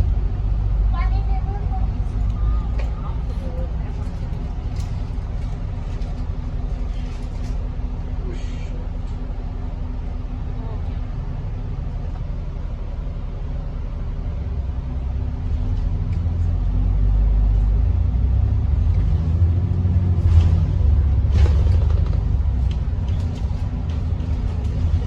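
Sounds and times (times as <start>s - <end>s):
bus engine and road rumble: 0.0s - 25.0s
rattles and knocks: 2.2s - 7.8s, 20.1s - 25.0s.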